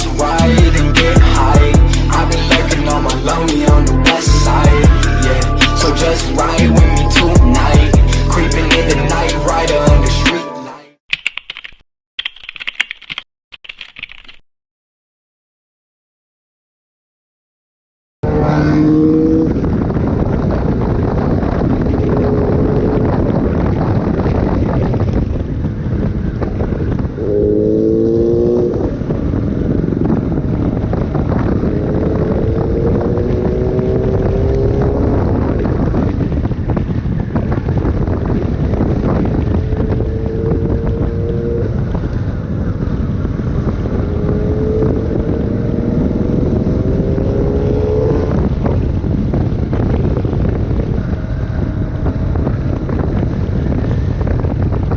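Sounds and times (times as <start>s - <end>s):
motorcycle engine accelerating: 18.2s - 54.9s
wind buffeting microphone: 18.2s - 54.9s.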